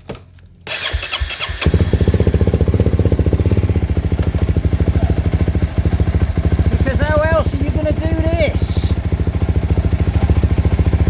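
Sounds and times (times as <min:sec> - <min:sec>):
electric starter cranking: 0:00.7 - 0:02.6, 0:04.2 - 0:11.0
motorcycle engine running: 0:00.8 - 0:11.0.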